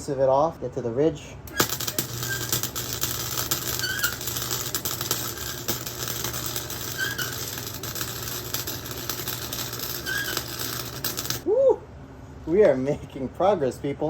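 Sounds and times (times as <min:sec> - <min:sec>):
low electrical hum: 0:00.0 - 0:14.0
welding arc crackling: 0:01.5 - 0:11.5
faint short squeak: 0:03.6 - 0:04.5, 0:06.3 - 0:07.6, 0:09.8 - 0:10.9.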